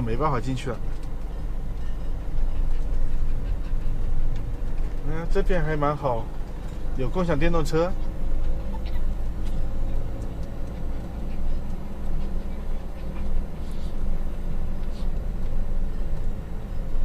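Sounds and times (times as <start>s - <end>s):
engine and road rumble: 0.0s - 17.0s.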